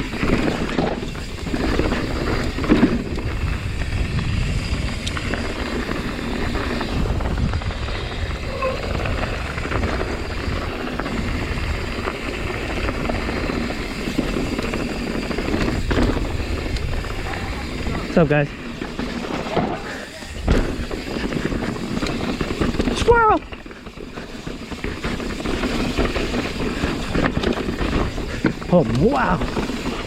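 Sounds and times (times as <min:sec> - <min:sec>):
wind rushing on microphone: 0:00.0 - 0:14.6
bike tyres and frame rattling: 0:00.0 - 0:30.0.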